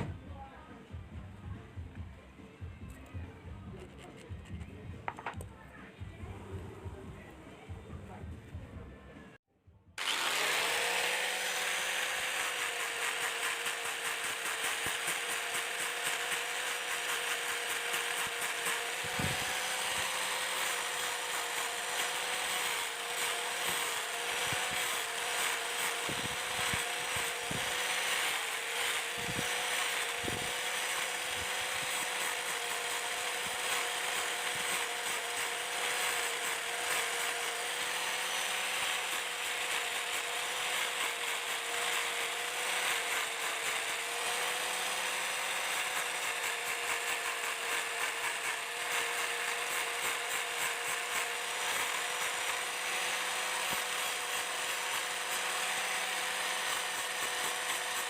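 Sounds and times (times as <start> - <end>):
power tool whining: 0.0 - 5.5, 10.0 - 58.0.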